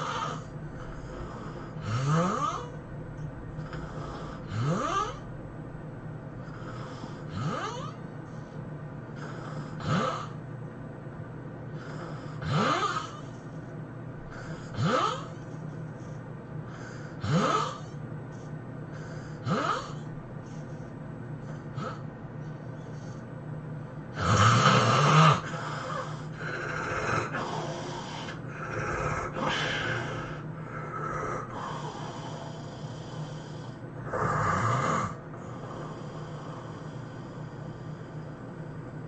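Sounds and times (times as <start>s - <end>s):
person snoring: 0.0s - 2.8s, 3.6s - 5.2s, 6.4s - 8.0s, 9.2s - 10.4s, 11.8s - 13.3s, 14.3s - 15.5s, 16.8s - 18.0s, 19.0s - 20.1s, 21.5s - 22.0s, 24.1s - 38.4s.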